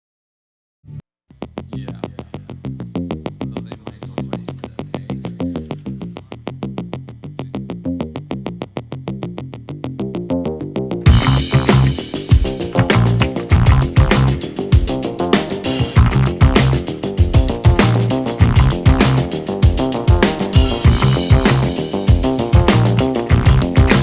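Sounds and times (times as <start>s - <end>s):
electronic music with quick beat: 11.1s - 24.0s.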